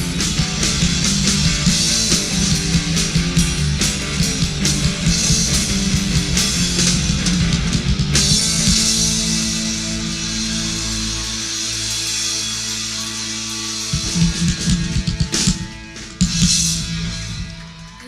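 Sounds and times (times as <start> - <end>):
drum kit fast rhythm: 0.0 - 11.7, 12.9 - 18.0
electric guitar: 0.0 - 18.0
cymbal crash: 8.2 - 18.0.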